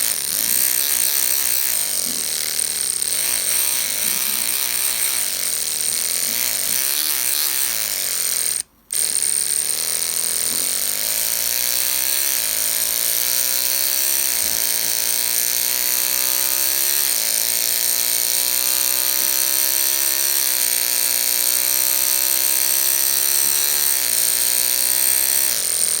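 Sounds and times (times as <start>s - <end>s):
electric toothbrush buzzing: 0.0s - 26.0s.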